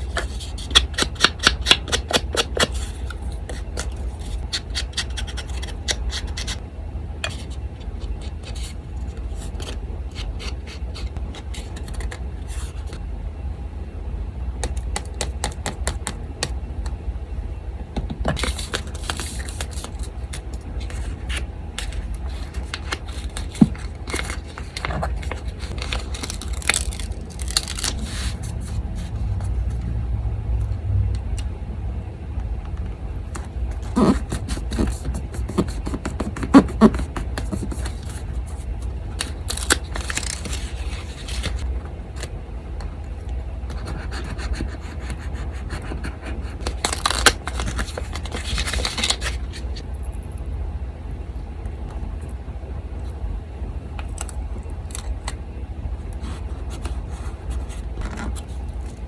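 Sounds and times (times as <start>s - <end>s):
paper rustling and scraping: 0.0s - 6.6s, 18.4s - 29.5s, 33.7s - 41.6s, 43.7s - 49.8s
electric fan humming: 0.0s - 59.0s.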